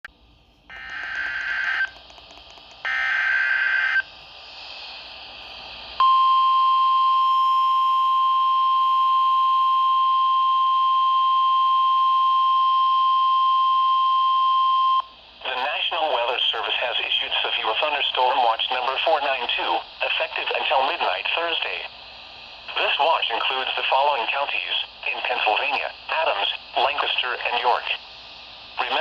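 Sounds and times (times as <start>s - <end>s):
harsh buzzing data bursts: 0.7s - 4.1s
steady single-pitch alarm tone: 0.7s - 4.1s, 6.0s - 15.1s
radio hiss: 0.7s - 6.0s, 15.3s - 29.0s.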